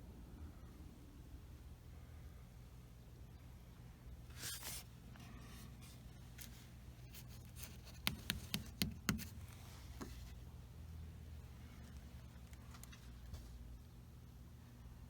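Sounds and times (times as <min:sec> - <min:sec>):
short scrape: 0:04.3 - 0:05.6
sharp clicks and taps: 0:07.8 - 0:09.4.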